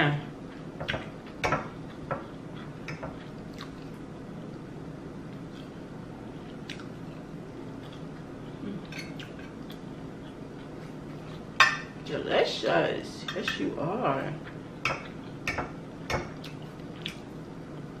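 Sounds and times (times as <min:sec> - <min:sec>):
steady low hum: 0:00.0 - 0:18.0
person chewing food: 0:00.4 - 0:04.1, 0:05.3 - 0:11.6, 0:16.3 - 0:18.0.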